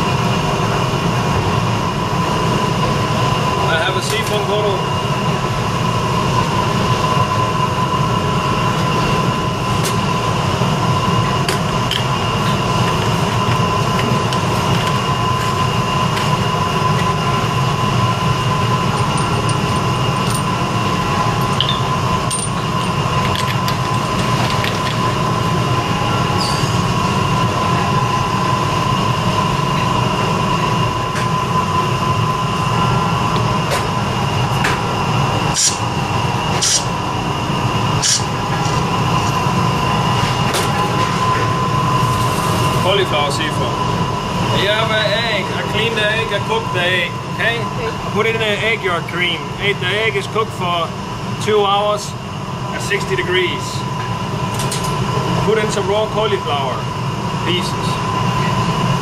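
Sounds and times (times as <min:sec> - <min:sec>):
ventilation hum and rumble: 0:00.0 - 0:59.0
high whining tones: 0:01.8 - 0:24.3.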